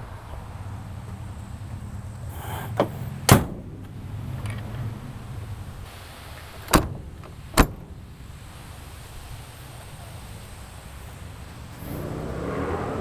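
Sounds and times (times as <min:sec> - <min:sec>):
car doors slamming: 0:02.3 - 0:04.0, 0:06.4 - 0:08.0.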